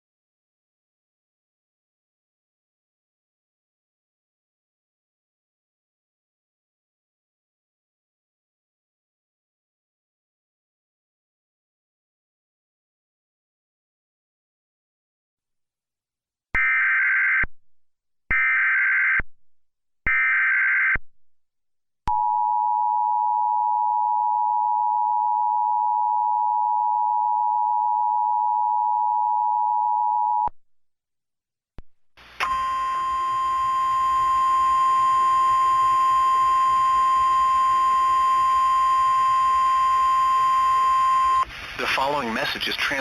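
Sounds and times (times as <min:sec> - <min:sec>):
two-tone attention signal: 0:32.4 - 0:41.4
background hiss: 0:41.4 - 0:43.0.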